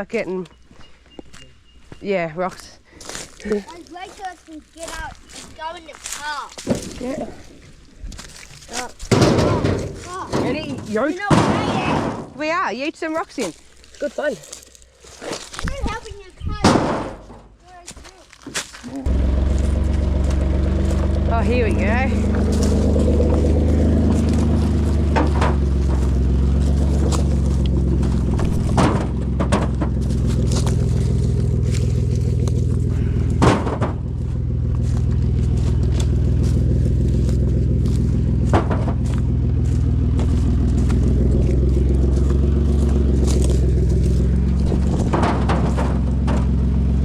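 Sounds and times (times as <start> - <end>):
car engine running: 3.7 - 14.9, 19.0 - 47.0
knocks and rattles from bumps: 8.2 - 12.7, 15.6 - 17.9, 18.5 - 47.0.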